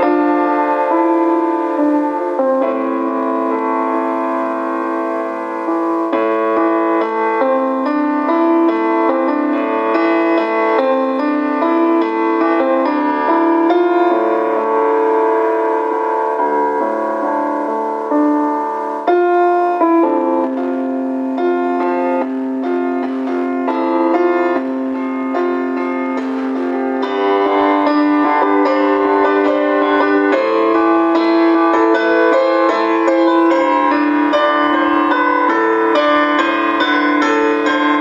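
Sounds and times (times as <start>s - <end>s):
slow piano music: 0.0s - 38.0s.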